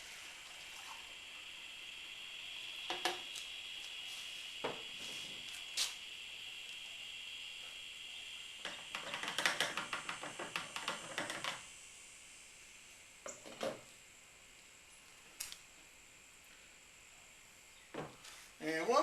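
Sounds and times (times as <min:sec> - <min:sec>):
gasoline pouring through funnel: 0:00.0 - 0:02.9.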